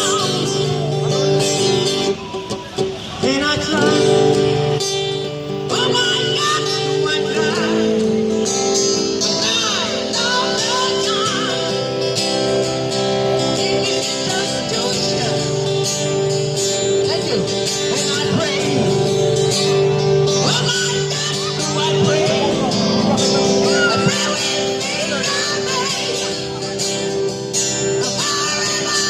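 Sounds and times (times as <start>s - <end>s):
person singing with vibrato: 0.0s - 2.2s, 3.1s - 29.0s
guitar accompaniment: 0.0s - 29.0s.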